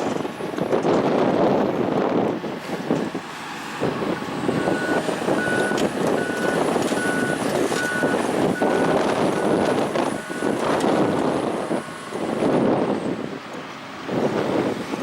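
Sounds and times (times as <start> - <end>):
heavy machinery running: 0.0 - 15.0
reversing alarm beeping: 4.6 - 11.9.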